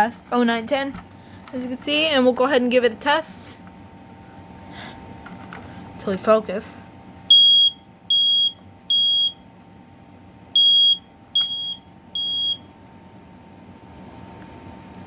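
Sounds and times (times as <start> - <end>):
smoke alarm beeping: 7.3 - 9.4, 10.6 - 12.7.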